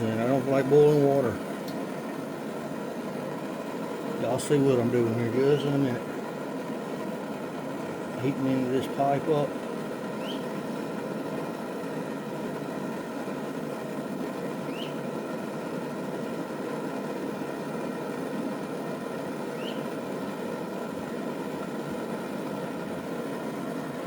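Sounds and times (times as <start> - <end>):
torch flame roaring: 0.0 - 24.0
faint high chirps: 19.6 - 19.9.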